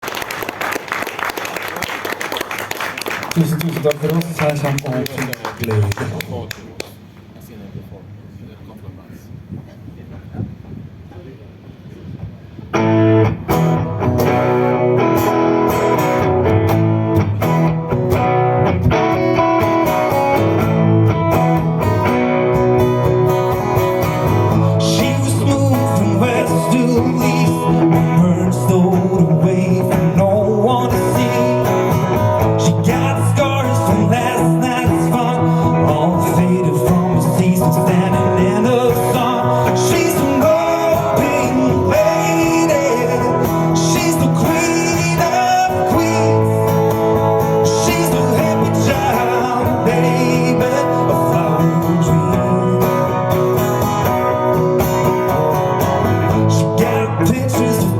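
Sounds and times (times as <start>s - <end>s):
guitars: 12.6s - 57.9s
live country band: 12.7s - 57.9s.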